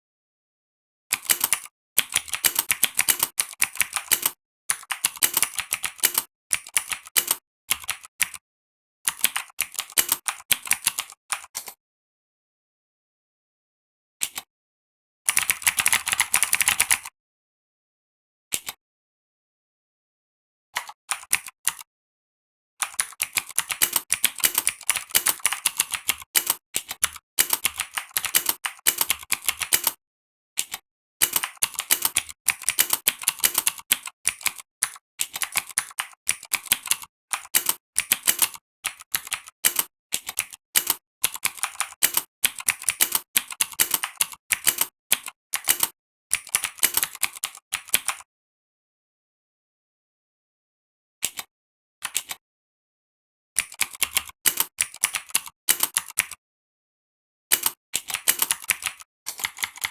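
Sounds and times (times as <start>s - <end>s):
mechanical keyboard key clicks: 2.4s - 4.4s, 5.2s - 6.3s, 23.7s - 26.6s, 27.4s - 30.0s, 31.2s - 33.7s, 39.6s - 41.0s, 41.8s - 44.9s, 45.6s - 45.9s, 54.0s - 56.1s, 57.5s - 59.9s.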